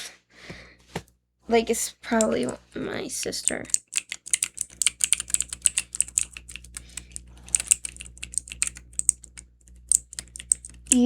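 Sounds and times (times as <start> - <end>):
keyboard keys clicking: 2.1 - 2.6, 3.2 - 11.0.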